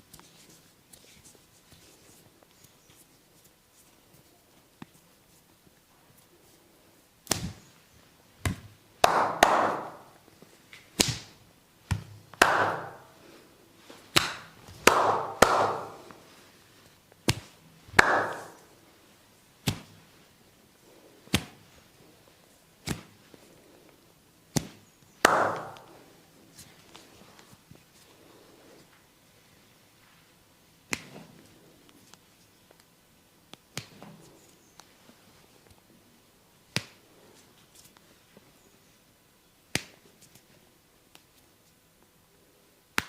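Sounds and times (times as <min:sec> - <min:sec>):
massage chops and slaps on body: 0:07.2 - 0:07.7, 0:08.4 - 0:13.1, 0:14.0 - 0:16.2, 0:17.2 - 0:18.7, 0:19.6 - 0:20.1, 0:21.3 - 0:21.7, 0:22.8 - 0:23.3, 0:24.5 - 0:26.0, 0:30.9 - 0:31.4, 0:33.5 - 0:34.2, 0:36.7 - 0:37.1, 0:39.7 - 0:40.4.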